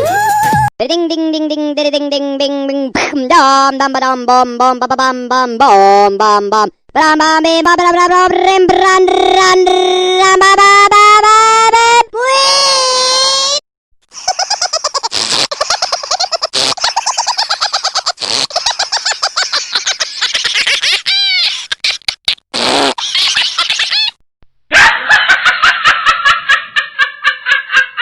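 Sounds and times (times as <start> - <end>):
cackling laugh effect: 14.1 - 28.0.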